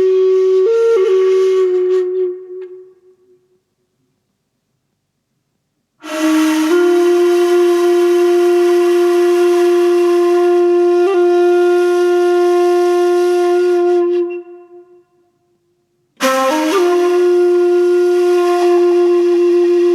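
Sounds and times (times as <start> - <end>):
breathy flute long note: 0.0 - 3.5, 6.0 - 15.5, 16.2 - 19.9.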